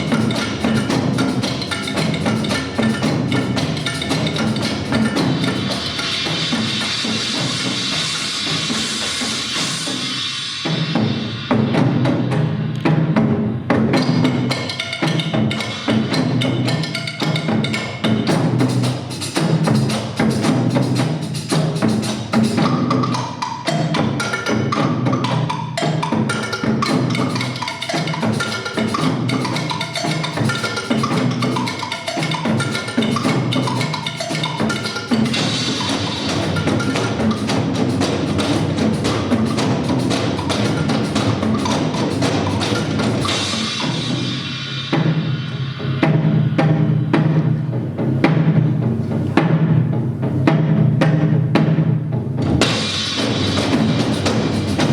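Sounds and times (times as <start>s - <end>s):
ensemble drumming: 0.0s - 10.0s, 26.0s - 54.9s.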